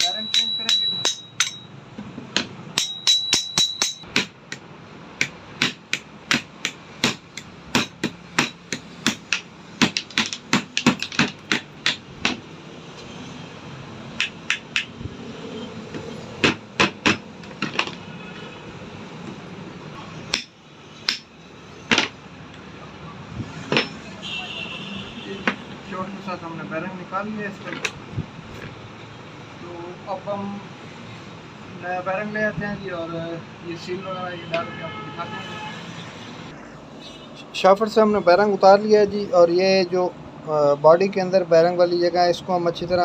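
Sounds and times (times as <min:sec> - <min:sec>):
hammer striking metal: 0:00.0 - 0:04.6, 0:05.2 - 0:12.4, 0:20.3 - 0:22.2, 0:23.7 - 0:24.0.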